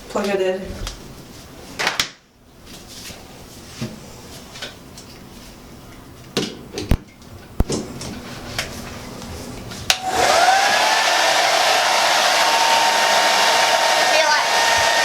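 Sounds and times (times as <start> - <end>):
hair dryer handling clicks: 9.9 - 10.2.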